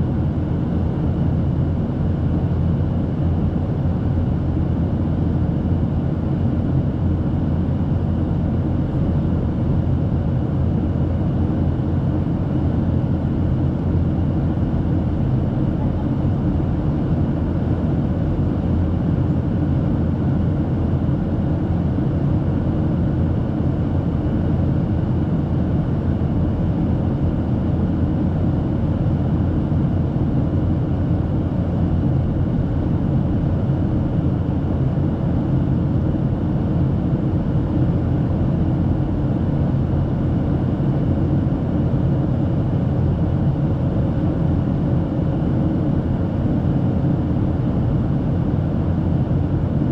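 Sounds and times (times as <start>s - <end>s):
jet engines droning: 0.0s - 49.9s.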